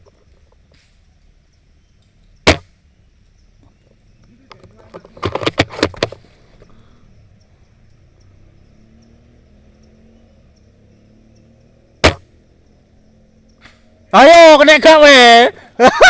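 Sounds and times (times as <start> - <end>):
outdoor background noise: 0.0 - 16.0
airsoft gun firing crack: 2.4 - 2.8, 12.0 - 12.3.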